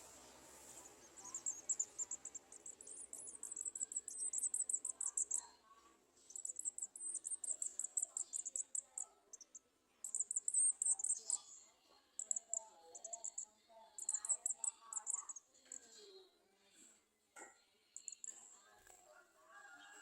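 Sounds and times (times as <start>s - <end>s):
sunbirds chirping: 0.0s - 15.9s.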